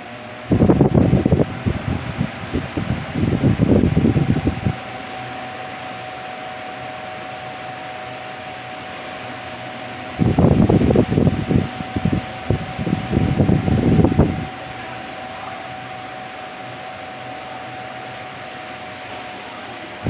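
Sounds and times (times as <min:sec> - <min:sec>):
table fan air rushing: 0:00.0 - 0:20.0
thin steady fan tone: 0:00.0 - 0:20.0
wind buffeting microphone: 0:00.5 - 0:04.9, 0:10.1 - 0:14.6.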